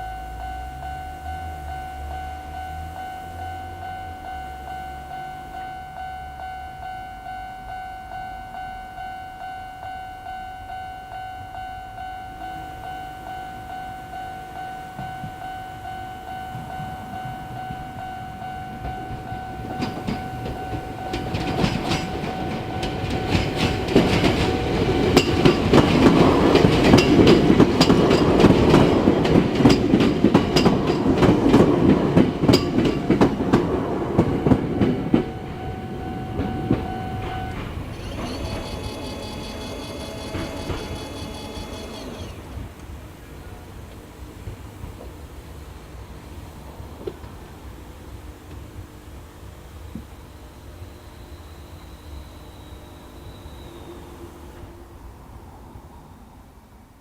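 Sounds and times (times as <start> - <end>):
level crossing alarm tone: 0.0 - 42.6
train wheels clattering: 14.6 - 42.8.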